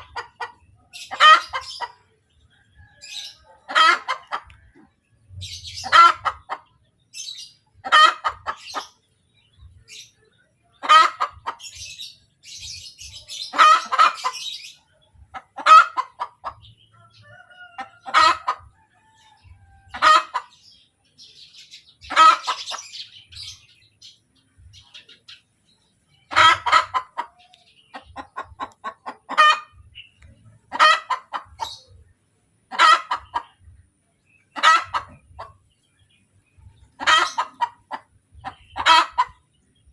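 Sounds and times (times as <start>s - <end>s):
hen cackling: 0.0s - 2.1s, 2.9s - 9.0s, 10.8s - 23.8s, 26.3s - 32.0s, 32.7s - 33.6s, 34.5s - 35.6s, 36.8s - 39.5s.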